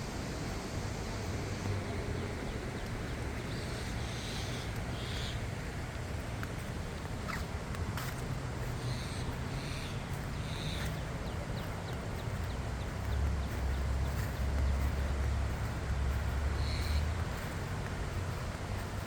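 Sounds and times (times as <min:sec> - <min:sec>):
birds chirping: 0:08.9 - 0:17.5.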